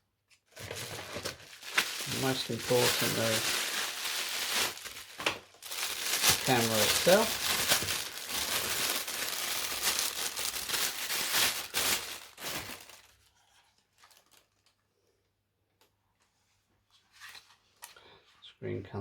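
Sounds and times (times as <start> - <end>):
plastic wrapping crinkling and tearing: 0.5 - 14.8.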